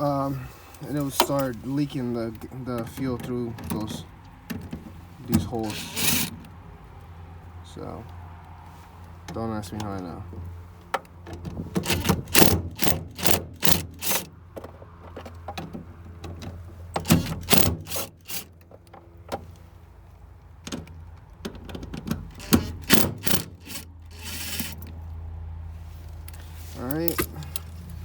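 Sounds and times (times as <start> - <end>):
tool clicking on screws: 5.6 - 6.3, 11.8 - 14.3, 17.0 - 18.6, 21.9 - 24.9.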